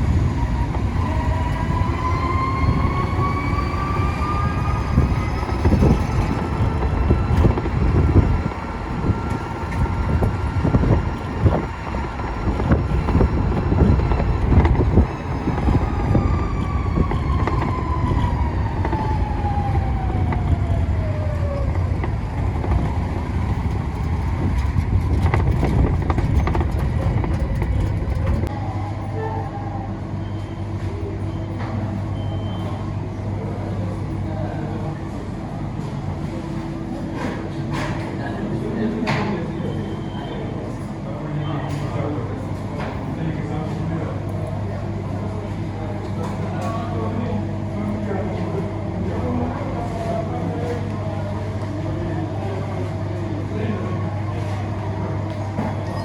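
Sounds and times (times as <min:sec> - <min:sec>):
vehicle engines running: 0:00.0 - 0:29.1.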